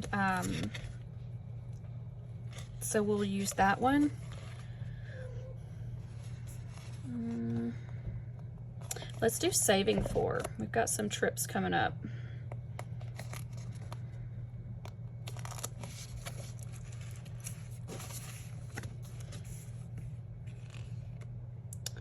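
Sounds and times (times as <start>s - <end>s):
steady low hum: 0.0s - 22.0s
paper rustling and sliding: 15.3s - 21.2s.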